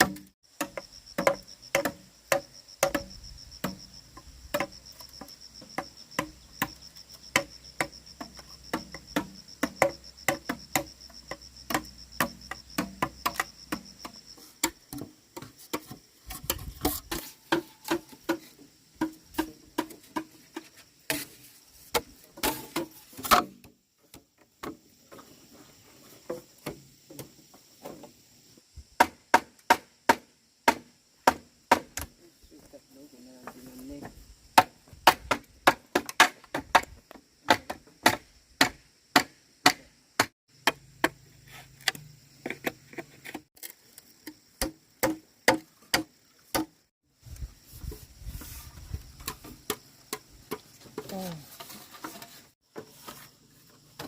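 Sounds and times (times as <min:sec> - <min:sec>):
tool striking wood: 0:00.0 - 0:03.8, 0:44.6 - 0:46.8.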